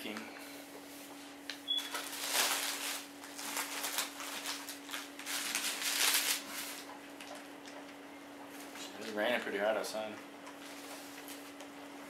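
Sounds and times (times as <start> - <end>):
steady low hum: 0.0 - 12.0
packing material rustling: 1.7 - 7.4.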